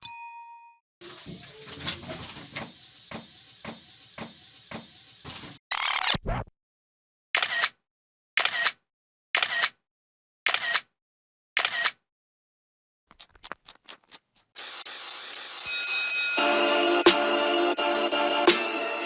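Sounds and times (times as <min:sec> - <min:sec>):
spray paint can hissing: 0:14.6 - 0:16.6.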